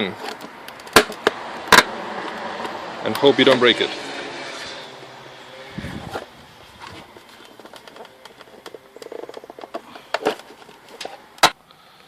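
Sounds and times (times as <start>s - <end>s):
plastic mirror housing clicks: 7.2s - 11.6s.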